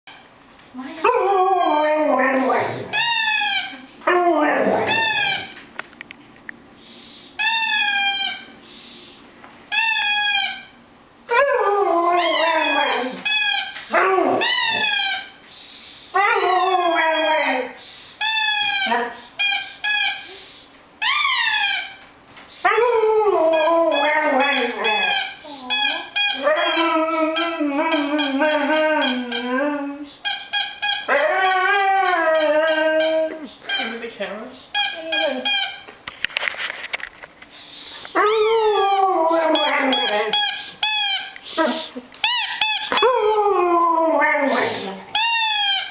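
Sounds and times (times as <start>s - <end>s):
husky howling: 4.0s - 5.6s, 13.9s - 14.8s, 31.0s - 33.4s, 38.2s - 40.3s.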